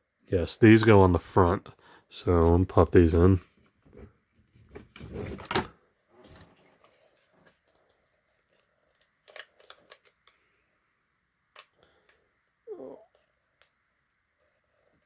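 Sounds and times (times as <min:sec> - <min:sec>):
plastic toy parts clicking and rubbing: 0:06.3 - 0:10.4.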